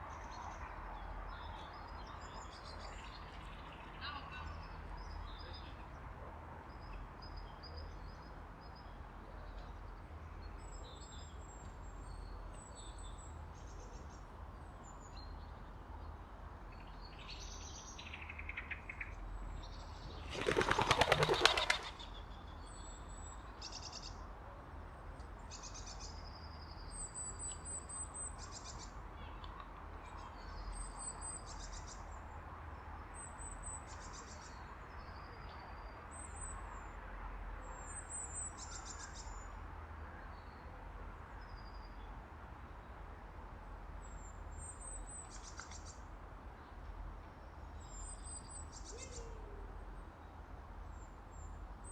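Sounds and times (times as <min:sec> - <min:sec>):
small birds chirping: 0:17.0 - 0:24.0
bird wings clattering: 0:20.1 - 0:22.0.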